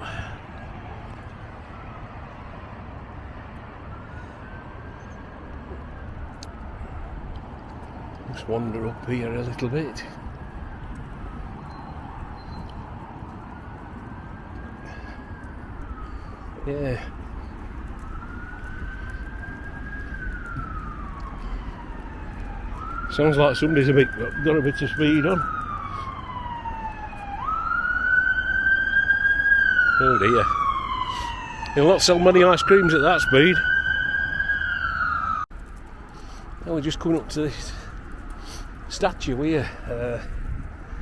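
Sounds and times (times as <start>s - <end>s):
emergency vehicle siren wailing: 0.0s - 41.0s
road traffic rumble: 0.0s - 41.0s.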